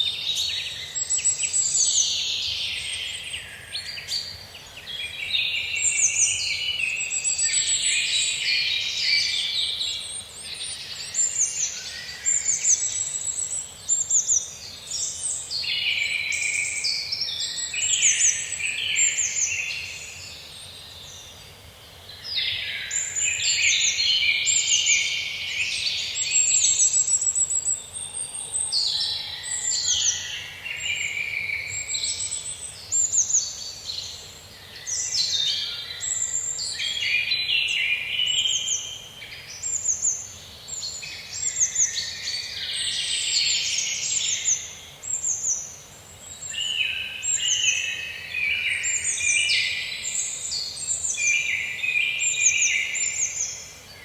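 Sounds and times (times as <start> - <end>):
songbirds chirping and warbling: 0.0 - 54.0.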